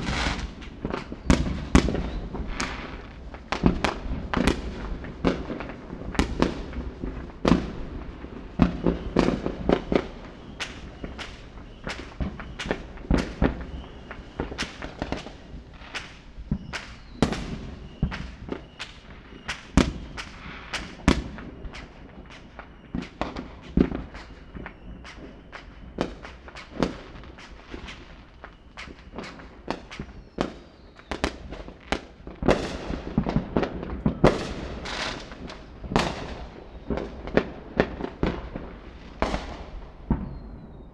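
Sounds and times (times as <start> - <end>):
fireworks bangs and crackles: 0.0 - 40.9.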